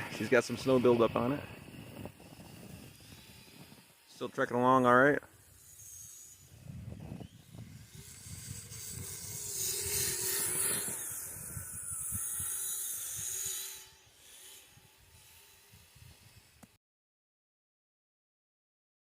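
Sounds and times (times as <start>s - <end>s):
snow hissing: 0.0s - 7.3s
faint wavering motor whine: 0.0s - 16.8s.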